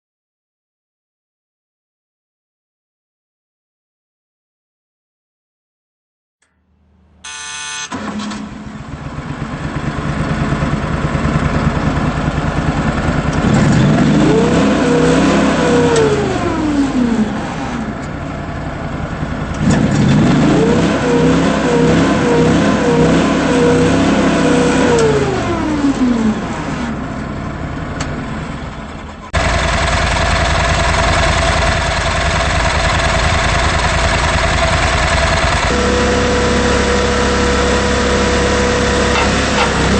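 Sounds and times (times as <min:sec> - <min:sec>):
loader engine revving: 0:06.8 - 0:39.9.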